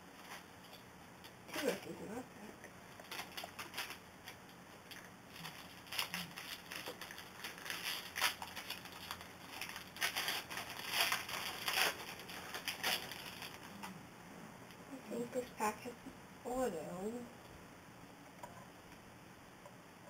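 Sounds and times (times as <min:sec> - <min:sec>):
foil wrapper crinkling and tearing: 0:02.9 - 0:13.8.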